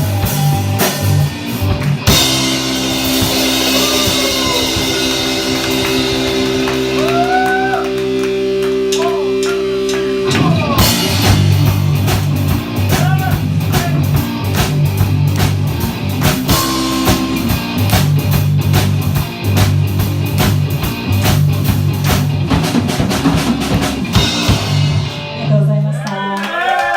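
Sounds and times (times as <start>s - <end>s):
drums and bass beat: 0.0s - 26.0s
electric guitar chord with bends: 2.0s - 12.8s.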